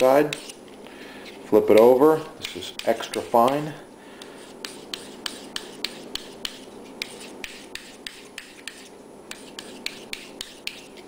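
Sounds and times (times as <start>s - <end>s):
knife scraping on sharpening stone: 0.2s - 0.6s.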